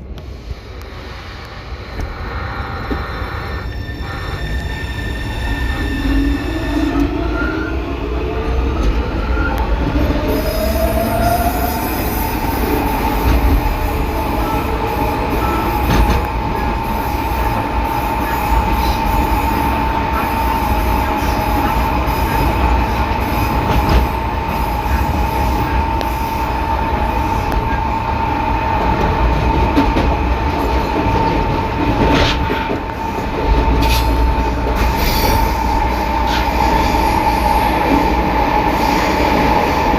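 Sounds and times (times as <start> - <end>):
train motor whining: 0.7 - 5.9.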